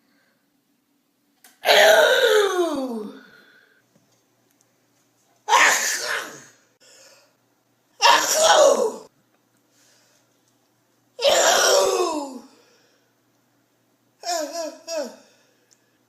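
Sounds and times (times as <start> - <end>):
person sneezing: 1.5 - 3.2, 11.2 - 12.5.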